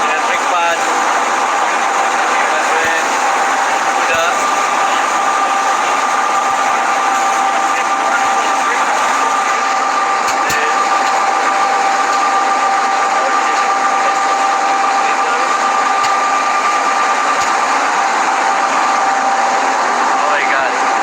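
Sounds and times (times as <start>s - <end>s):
boat engine whining: 0.0s - 21.0s.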